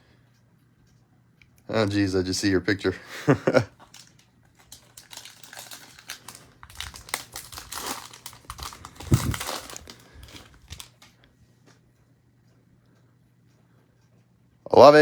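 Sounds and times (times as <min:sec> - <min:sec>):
wrapper tearing and crinkling: 0:03.8 - 0:11.1.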